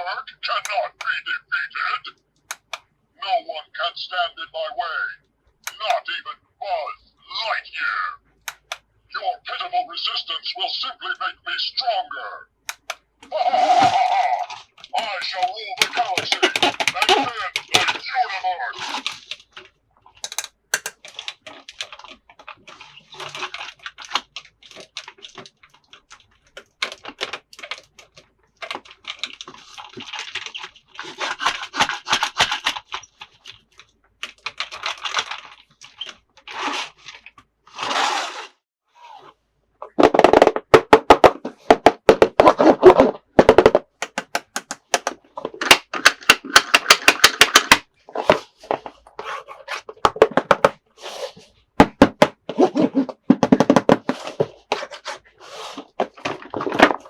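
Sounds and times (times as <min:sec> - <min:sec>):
plastic toy parts clicking: 0:02.2 - 0:02.9, 0:05.6 - 0:06.0, 0:08.4 - 0:08.8, 0:12.6 - 0:13.1, 0:14.4 - 0:18.0, 0:18.8 - 0:36.2, 0:43.5 - 0:47.8
plastic packaging crinkling: 0:21.0 - 0:37.3.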